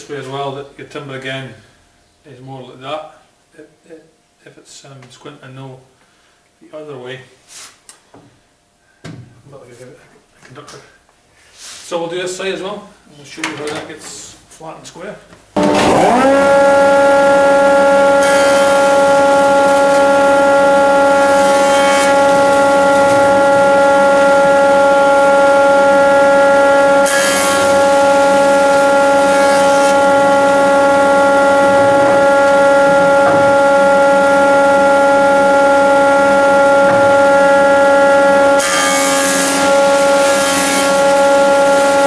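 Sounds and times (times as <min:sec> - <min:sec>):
board hissing over cutter: 0:15.6 - 0:42.0
planer high-pitched whine: 0:15.6 - 0:42.0.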